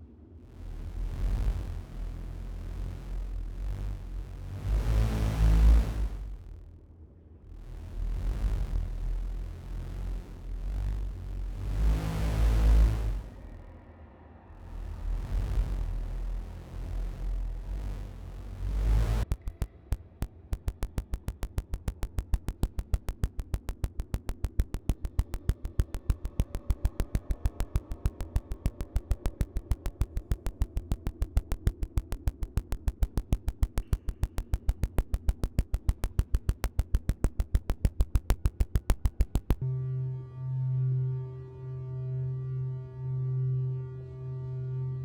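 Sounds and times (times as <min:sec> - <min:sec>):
pulsing hum of steady tones: 0:00.5 - 0:06.8, 0:07.5 - 0:13.8, 0:14.6 - 0:45.0
sharp clicks: 0:18.5 - 0:39.6.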